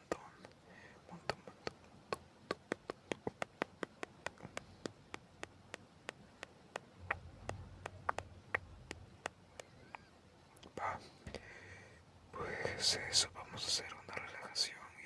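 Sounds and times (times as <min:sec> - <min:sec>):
faint hiss: 0:00.0 - 0:15.0
rain drops tapping: 0:02.1 - 0:09.7
faint low rumble: 0:04.3 - 0:15.0.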